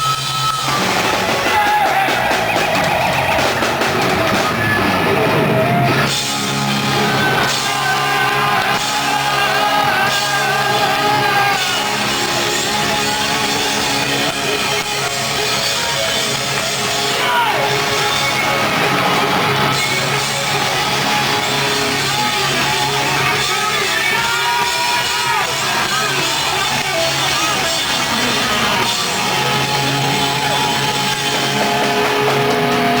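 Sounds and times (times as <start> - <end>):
rock band playing: 0.0 - 33.0
person singing: 6.9 - 33.0.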